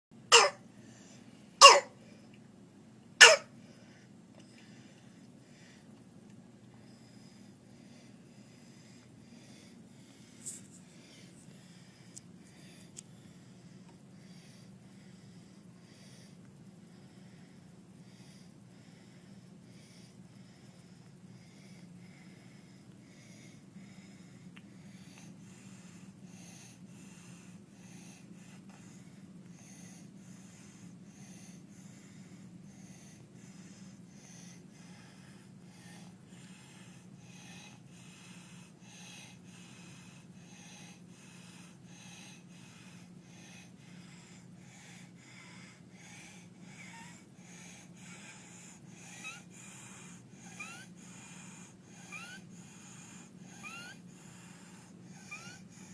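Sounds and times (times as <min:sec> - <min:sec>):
child breathing with harsh stridor: 0:00.3 - 0:01.9, 0:03.2 - 0:04.1, 0:21.4 - 0:55.9.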